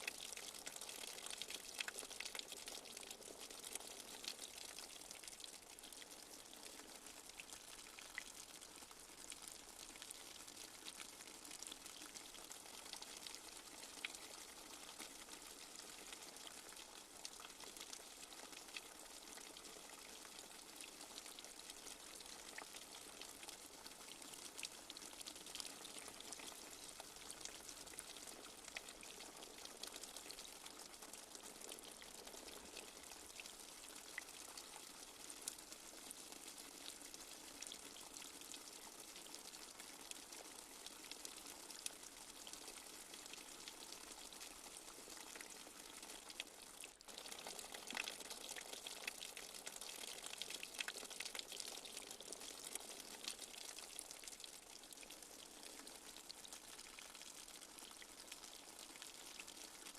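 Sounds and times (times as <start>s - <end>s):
raindrops ticking: 0.0s - 6.6s, 47.1s - 53.8s
light rain hiss: 0.0s - 59.9s.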